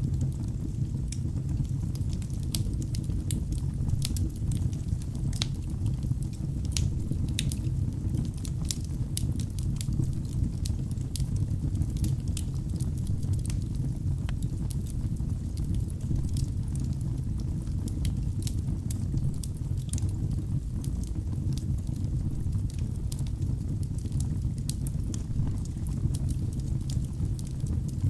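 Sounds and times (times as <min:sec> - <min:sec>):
wood fire crackling and popping: 0:00.0 - 0:28.0.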